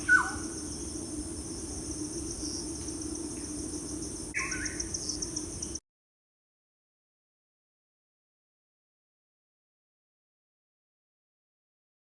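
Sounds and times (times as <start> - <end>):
downward-sliding bird calls: 0.0 - 3.6
insect trill: 0.0 - 5.8.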